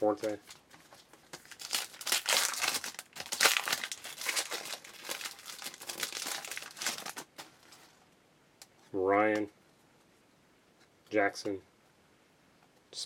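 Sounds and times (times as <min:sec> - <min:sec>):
plastic wrapper crinkling and tearing: 0:00.2 - 0:07.9.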